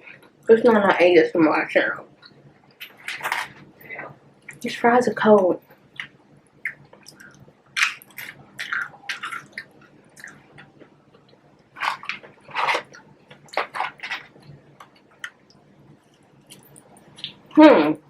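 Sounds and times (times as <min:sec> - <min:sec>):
wet chewing and lip-smacking: 0:05.9 - 0:11.4, 0:12.8 - 0:17.6.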